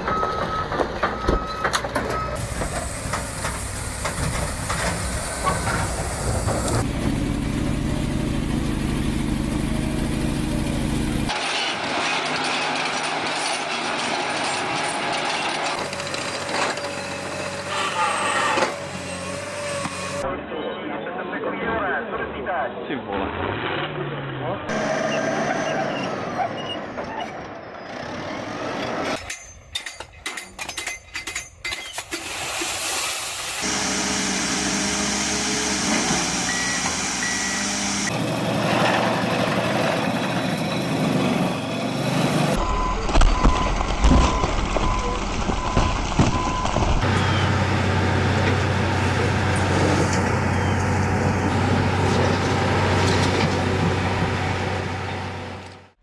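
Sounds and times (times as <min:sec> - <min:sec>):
heavy vehicle rumbling: 0:00.0 - 0:21.5, 0:23.3 - 0:29.3, 0:33.6 - 0:56.0
metallic knocks and clanks: 0:29.2 - 0:32.0.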